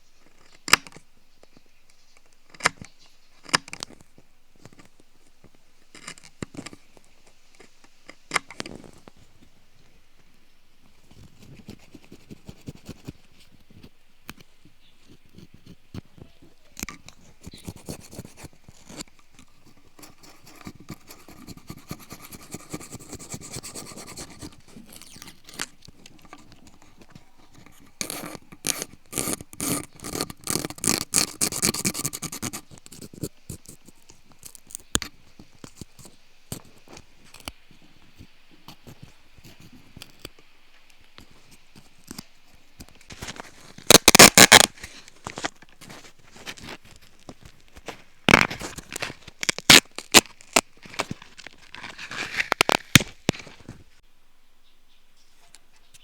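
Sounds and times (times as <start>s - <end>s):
ear pick scraping in ear: 11.0s - 40.4s, 41.2s - 54.0s.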